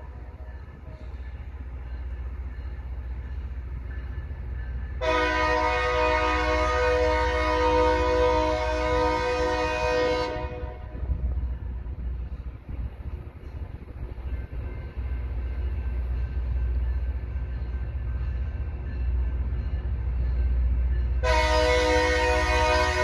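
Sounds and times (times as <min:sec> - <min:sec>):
low rumble of train: 0:00.0 - 0:23.0
train air horn blast: 0:05.0 - 0:11.1, 0:21.2 - 0:23.0.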